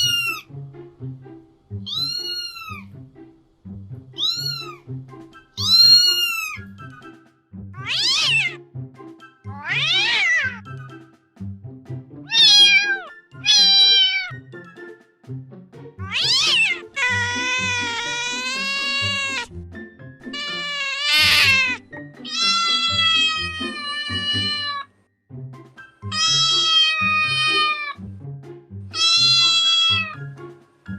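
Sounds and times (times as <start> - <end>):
cat meowing: 0.0 - 0.5, 1.8 - 2.9, 4.2 - 4.8, 5.6 - 6.7, 7.8 - 8.6, 9.5 - 10.6, 12.3 - 14.4, 16.0 - 19.5, 20.3 - 24.9, 26.1 - 28.0, 28.9 - 30.3
background music: 0.0 - 30.9.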